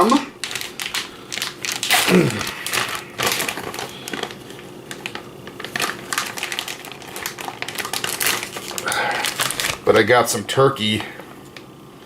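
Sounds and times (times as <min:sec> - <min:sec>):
small clicks and crackles: 0:04.9 - 0:09.8.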